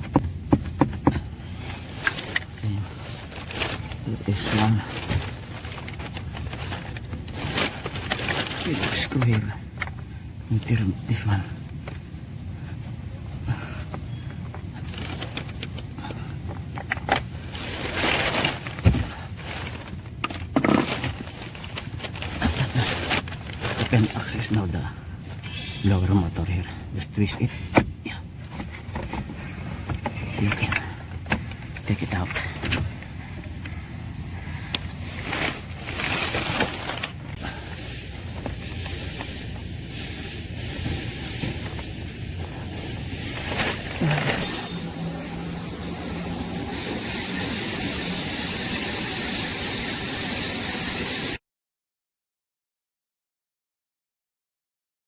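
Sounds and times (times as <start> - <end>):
rustling and scraping of blower motor: 0.0 - 48.2
steady low hum: 0.0 - 48.9.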